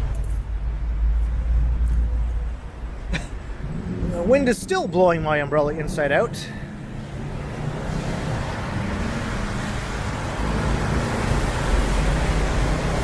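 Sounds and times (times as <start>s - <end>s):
road traffic hiss: 1.9s - 13.0s
rain: 7.2s - 13.0s.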